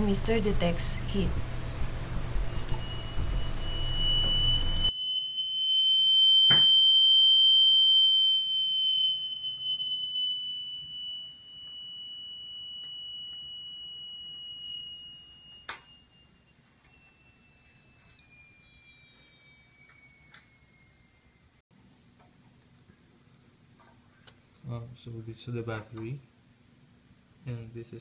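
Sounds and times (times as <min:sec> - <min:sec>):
high-pitched alarm buzzer tone: 0:00.5 - 0:21.0.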